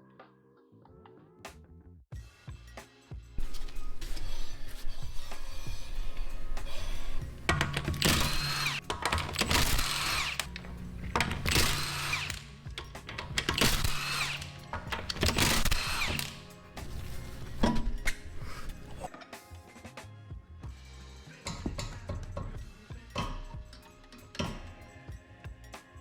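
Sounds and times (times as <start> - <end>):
background music: 0.0 - 26.0
power tool whirring: 3.4 - 19.1.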